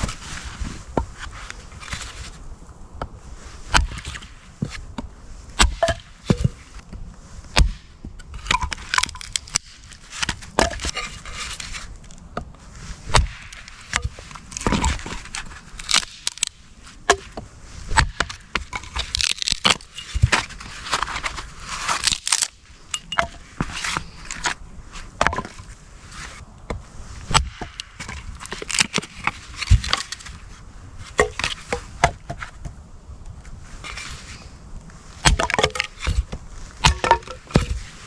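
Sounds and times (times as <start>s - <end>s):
dry sticks snapping: 8.5s - 11.0s, 13.1s - 16.6s, 18.9s - 21.1s, 21.9s - 23.3s, 27.4s - 30.3s.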